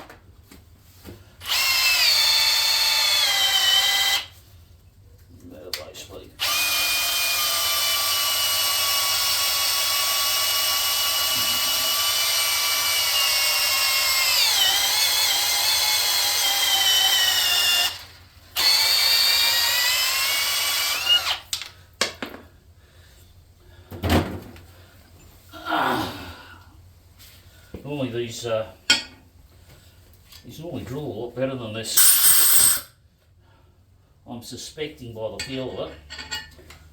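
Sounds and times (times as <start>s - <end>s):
cordless drill whining: 1.4s - 4.4s, 6.4s - 21.7s, 32.0s - 32.9s.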